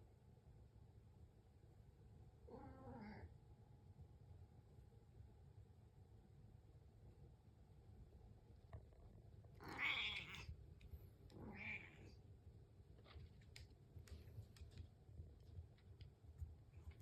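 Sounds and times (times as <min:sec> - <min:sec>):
cat meowing: 0:09.6 - 0:10.5, 0:11.4 - 0:12.1.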